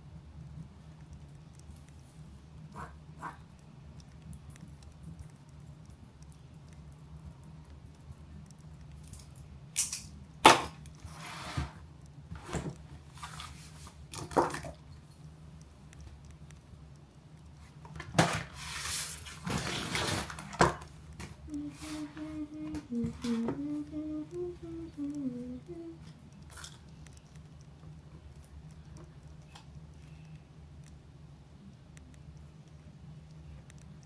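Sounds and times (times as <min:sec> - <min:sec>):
woman humming: 0:21.4 - 0:26.2.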